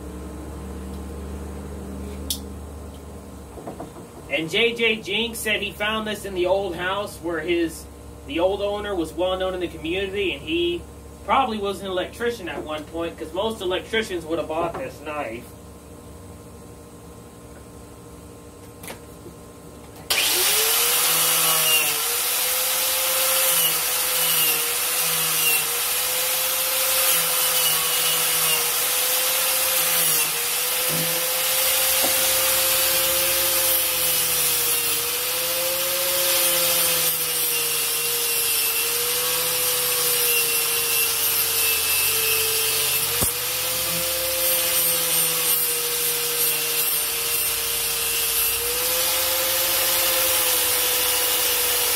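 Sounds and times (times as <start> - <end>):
power tool whining: 20.0 - 51.9.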